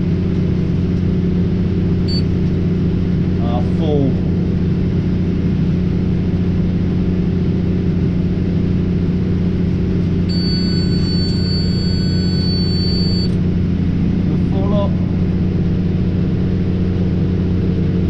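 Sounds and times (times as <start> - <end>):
tractor engine running: 0.0 - 18.0
high electronic beep: 2.1 - 2.3, 10.3 - 13.4.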